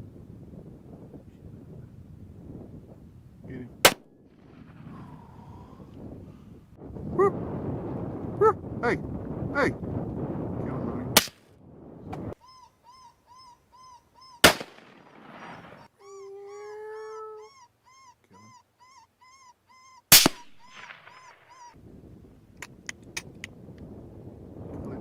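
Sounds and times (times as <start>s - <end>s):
rifle shots: 3.8s - 4.8s, 14.4s - 15.9s, 20.1s - 21.4s
high chirping call: 12.4s - 21.8s.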